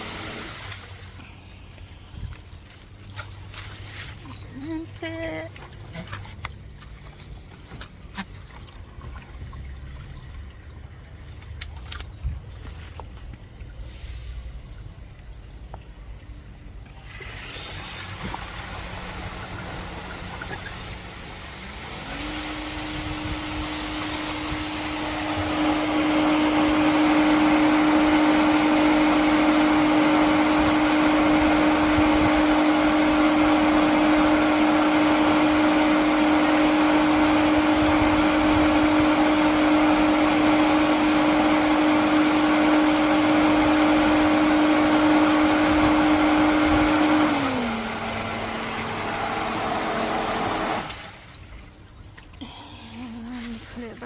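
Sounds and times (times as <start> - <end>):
water rushing: 0.0 - 1.3, 17.0 - 54.0
pool pump motor whine: 0.0 - 54.0.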